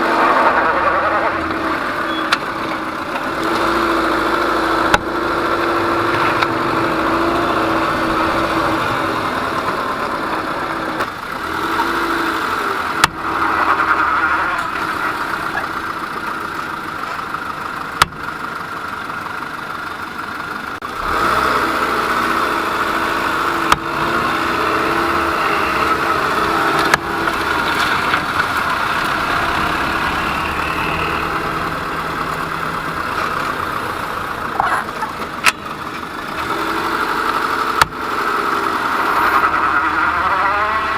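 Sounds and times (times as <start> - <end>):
car engine running: 0.0 - 40.9
wheel hub knocking: 14.6 - 19.2, 26.0 - 39.8.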